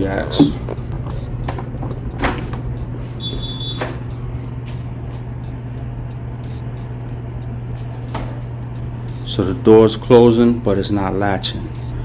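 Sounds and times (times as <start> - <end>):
steady low hum: 0.0 - 12.0
door hinge squeak: 3.2 - 4.1.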